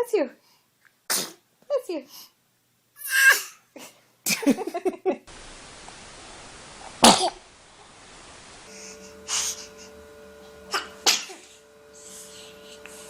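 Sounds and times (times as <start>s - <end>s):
children sneezing: 1.1s - 1.4s, 3.0s - 3.9s, 10.7s - 11.5s.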